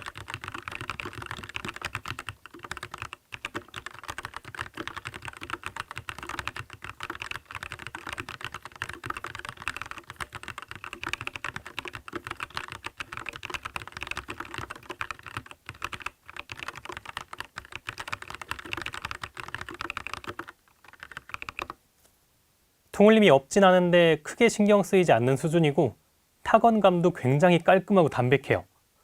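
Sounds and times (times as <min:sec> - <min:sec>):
mechanical keyboard typing: 0:00.0 - 0:21.8.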